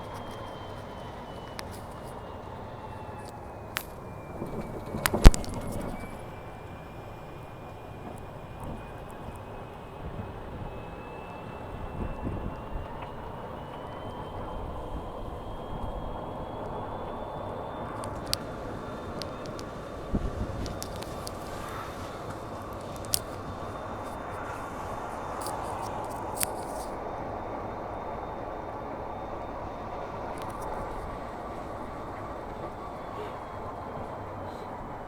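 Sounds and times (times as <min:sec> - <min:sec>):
faint rising whine: 0:00.0 - 0:35.0
vehicle road noise: 0:11.6 - 0:35.0.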